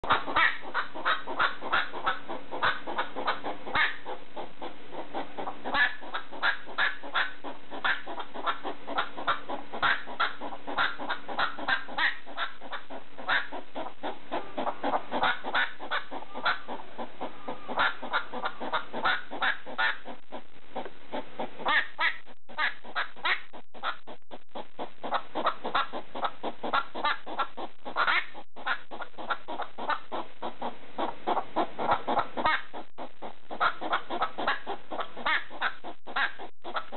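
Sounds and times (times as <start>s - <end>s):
hedgehog barking: 0.0s - 24.1s, 25.0s - 36.9s.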